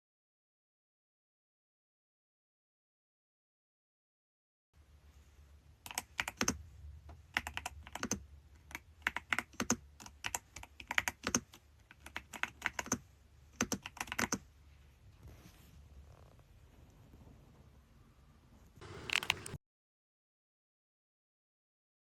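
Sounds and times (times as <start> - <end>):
mechanical keyboard typing: 5.8 - 6.6, 7.3 - 14.4, 18.8 - 19.6.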